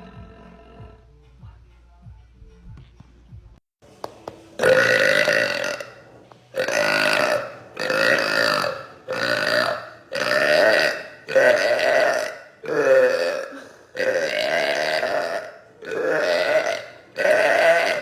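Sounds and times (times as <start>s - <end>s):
girl burping: 4.6s - 6.0s, 6.6s - 18.0s.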